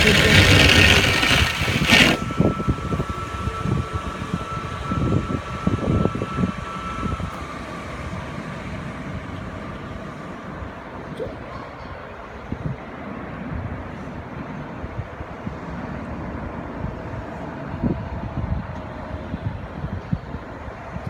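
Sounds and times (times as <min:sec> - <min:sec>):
water jet hissing: 0:00.0 - 0:02.2
steady whine: 0:00.0 - 0:08.8.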